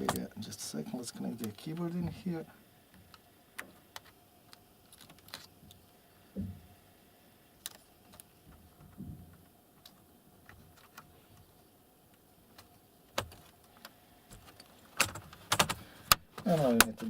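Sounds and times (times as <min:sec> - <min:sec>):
small clicks of cable handling: 0:03.0 - 0:05.8, 0:07.6 - 0:11.5.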